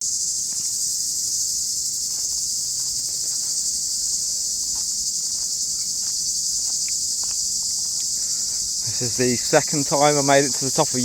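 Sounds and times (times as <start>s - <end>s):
cicadas shrilling: 0.0s - 11.0s.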